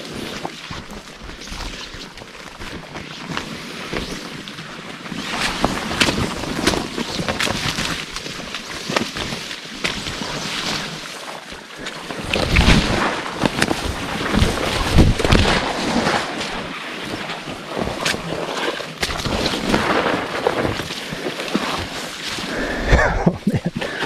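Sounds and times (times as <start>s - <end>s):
branches and leaves rustling: 0.3s - 23.9s
branches snapping: 12.1s - 15.8s.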